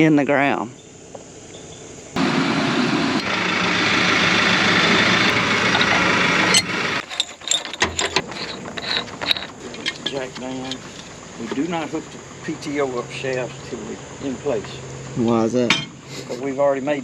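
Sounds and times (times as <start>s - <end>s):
tractor engine running: 0.8s - 17.0s
sharp metallic clicks and knocks: 4.8s - 11.7s.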